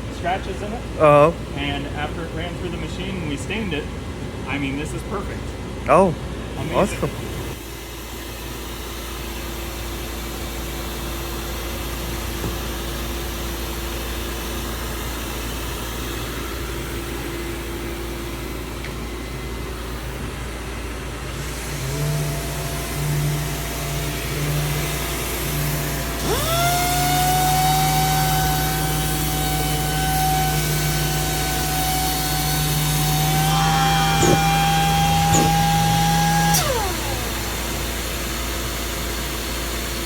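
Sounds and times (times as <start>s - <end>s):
sanding machine motor hum: 21.2s - 40.0s
sander motor whine: 21.3s - 40.0s
second machine tone: 33.5s - 36.7s.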